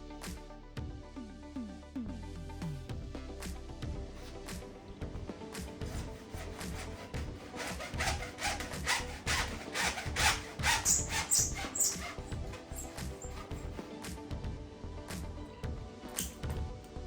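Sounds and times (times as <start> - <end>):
background music with held tones: 0.0 - 17.0
short rasping strokes: 5.6 - 13.8.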